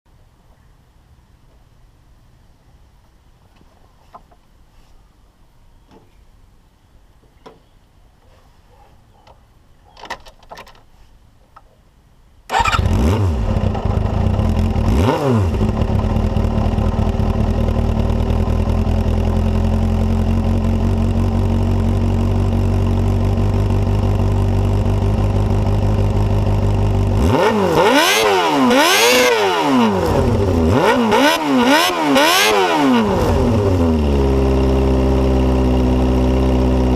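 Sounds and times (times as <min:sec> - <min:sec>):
motorcycle engine revving and idling: 0:12.5 - 0:36.9.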